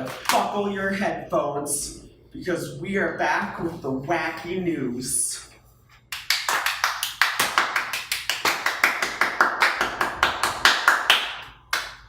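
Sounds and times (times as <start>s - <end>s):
rhythmic hand clapping: 0.0s - 0.5s, 6.1s - 12.0s.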